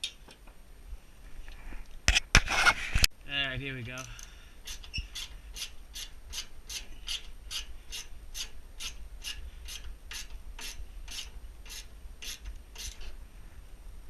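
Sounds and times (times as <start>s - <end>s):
ratchet wrench clicking: 4.0s - 13.1s.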